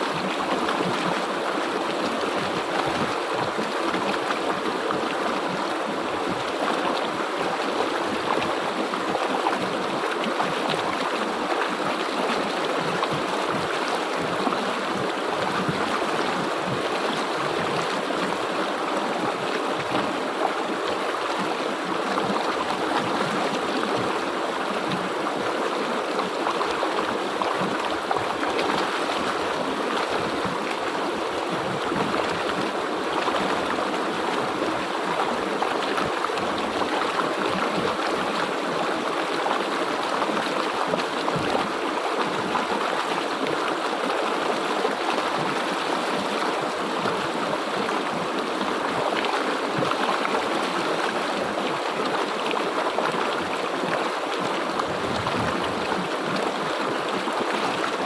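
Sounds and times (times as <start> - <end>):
stream babbling over rocks: 0.0 - 58.0.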